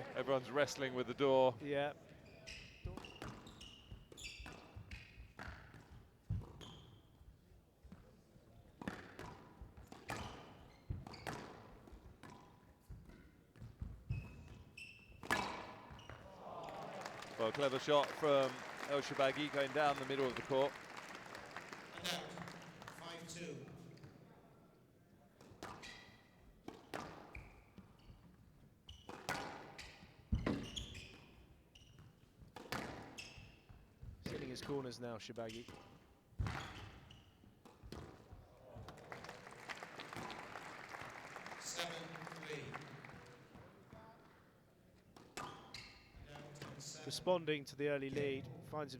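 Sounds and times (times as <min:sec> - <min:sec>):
shoes squeaking on court floor: 0:02.1 - 0:22.8, 0:25.6 - 0:39.0, 0:45.0 - 0:47.0
shoes squeaking on wooden floor: 0:02.2 - 0:05.4.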